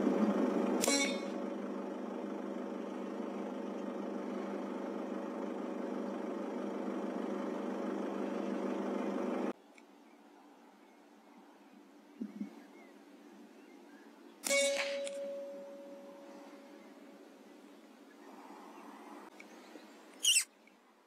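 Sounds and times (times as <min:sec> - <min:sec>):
vehicle engine idling: 0:00.0 - 0:09.6
sharp ringing crack: 0:00.8 - 0:01.6, 0:14.4 - 0:16.5.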